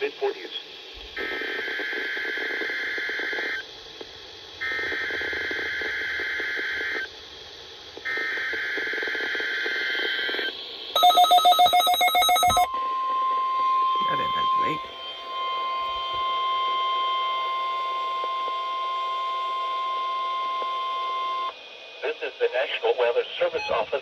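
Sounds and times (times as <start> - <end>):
rapidly pulsing electronic beep: 9.8 - 12.7, 13.9 - 16.4, 23.4 - 24.0
warbling digital data tones: 9.9 - 12.7, 14.0 - 16.4.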